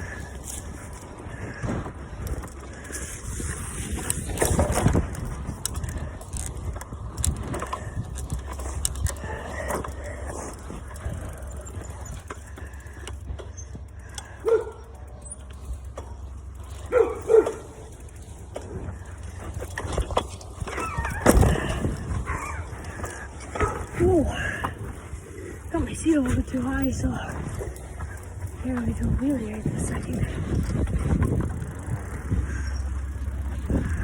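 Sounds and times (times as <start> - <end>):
bicycle clicks and rattles: 0.0 - 34.0
rumble and rushing noise: 0.0 - 34.0
heavy breathing: 7.5 - 16.9.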